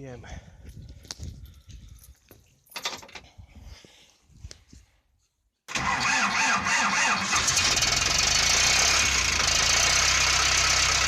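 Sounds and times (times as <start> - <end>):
diesel engine running: 5.7 - 11.0
starter cranking engine: 5.7 - 11.0.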